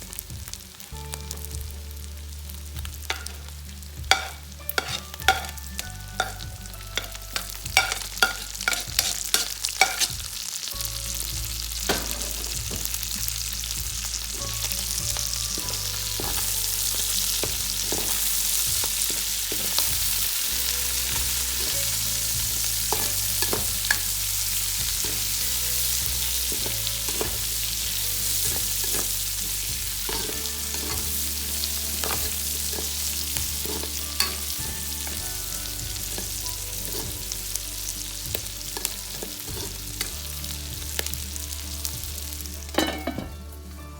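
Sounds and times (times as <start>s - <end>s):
food sizzling in a pan: 0.0s - 43.9s
utensil clacking against pan: 3.1s - 3.4s, 4.1s - 10.2s, 14.4s - 37.4s.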